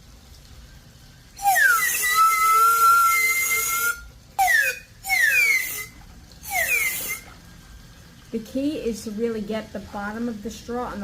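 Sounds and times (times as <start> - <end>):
plastic straw squealing on cup: 1.4 - 7.3.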